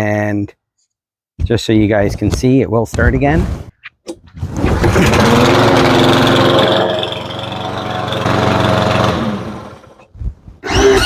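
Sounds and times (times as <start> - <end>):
lawn mower engine running: 4.7 - 10.0.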